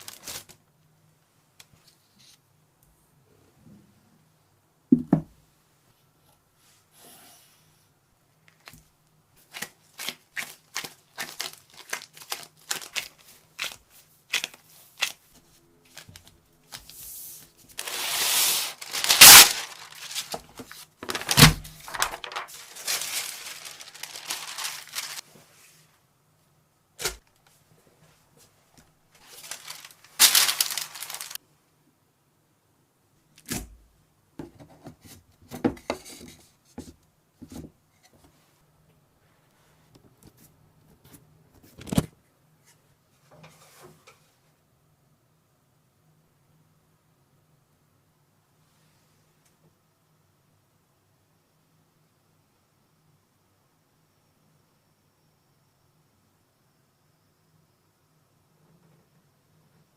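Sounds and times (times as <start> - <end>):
plastic film rustling and tearing: 0.0 - 0.6, 9.4 - 15.2, 17.7 - 25.2, 29.2 - 31.4.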